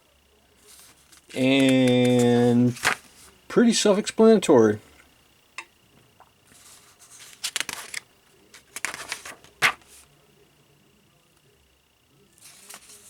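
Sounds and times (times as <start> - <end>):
paper pages rustling: 0.6 - 3.4, 6.5 - 10.1, 12.4 - 13.0.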